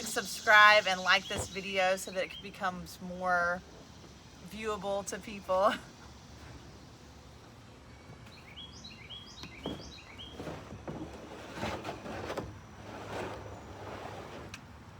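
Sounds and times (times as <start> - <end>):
bird chirping: 0.0 - 10.5.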